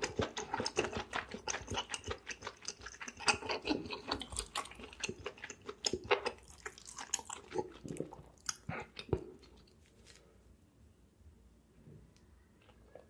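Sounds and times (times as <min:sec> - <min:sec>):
chewing food: 0:00.0 - 0:10.3
wet mouth clicks: 0:00.3 - 0:09.6.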